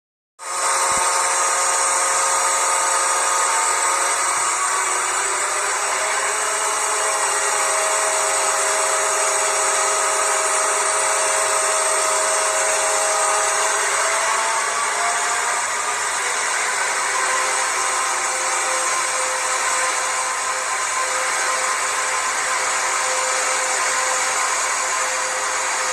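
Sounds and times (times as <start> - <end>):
recorded diesel engine from small speaker: 0.5 - 25.9.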